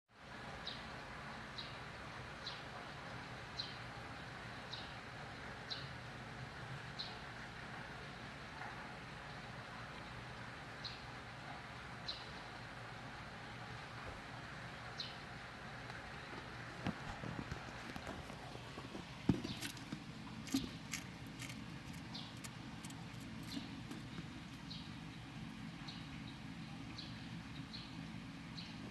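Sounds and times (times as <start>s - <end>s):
steady low hum: 9.6s - 28.9s
gecko and crickets scrabbling: 16.7s - 24.7s.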